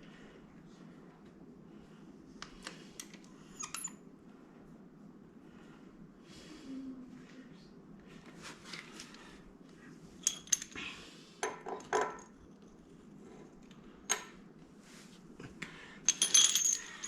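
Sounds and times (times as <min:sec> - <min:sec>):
metallic clicks and clinks: 0:16.1 - 0:17.0.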